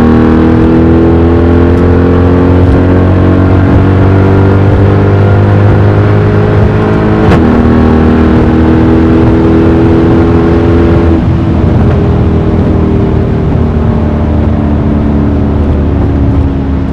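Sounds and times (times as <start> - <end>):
car engine with loud exhaust: 0.0 - 16.9
exhaust crack on upshift: 1.7 - 9.5, 10.8 - 14.5.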